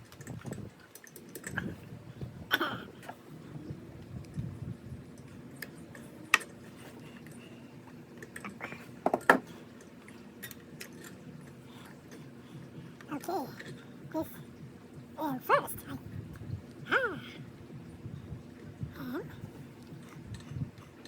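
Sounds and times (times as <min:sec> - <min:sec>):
small metal parts clicking: 0:00.0 - 0:01.6.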